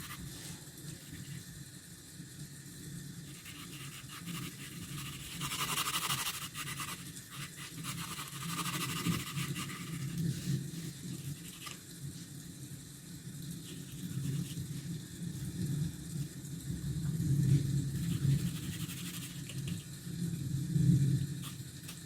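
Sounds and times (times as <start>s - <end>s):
pencil scratching on paper: 0.0s - 0.3s, 3.3s - 10.5s, 11.2s - 11.8s, 18.0s - 19.8s
steady low hum: 0.0s - 22.0s.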